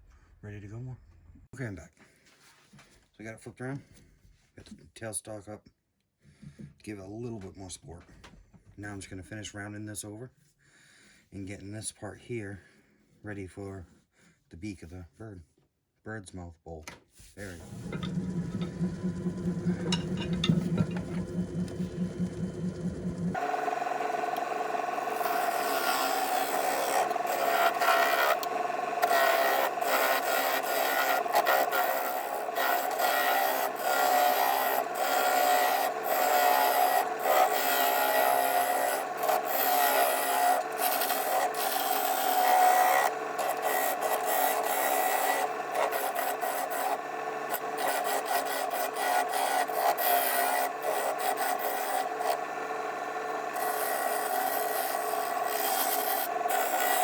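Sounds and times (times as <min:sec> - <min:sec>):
lathe tool scraping wood: 0:17.4 - 0:57.0
lathe motor hum: 0:17.5 - 0:57.0.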